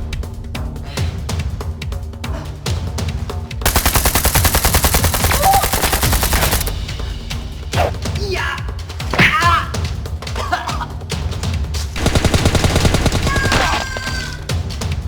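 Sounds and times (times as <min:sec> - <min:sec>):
machine-gun fire: 0:03.7 - 0:07.0, 0:12.0 - 0:14.4.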